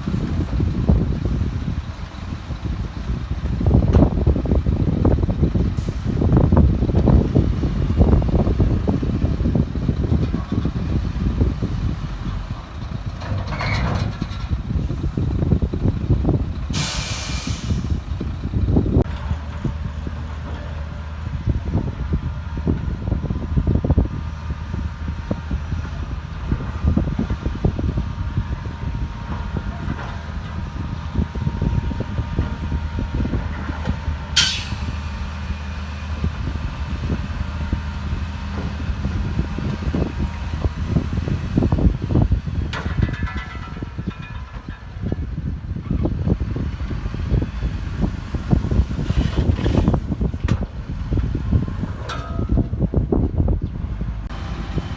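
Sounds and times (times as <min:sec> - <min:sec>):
diesel machinery running: 0:00.0 - 0:54.9
knocks and clanks: 0:13.1 - 0:14.6, 0:42.6 - 0:45.4, 0:52.0 - 0:52.8
air brake hiss: 0:16.7 - 0:18.0, 0:34.4 - 0:35.1
short sharp hiss: 0:34.4 - 0:35.0.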